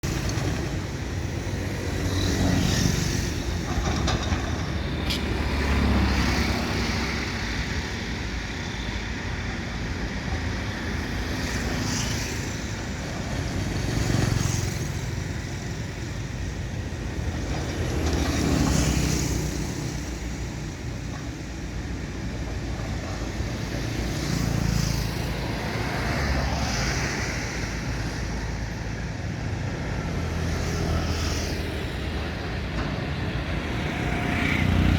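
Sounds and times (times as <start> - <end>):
excavator diesel engine rumbling: 0.0 - 10.8.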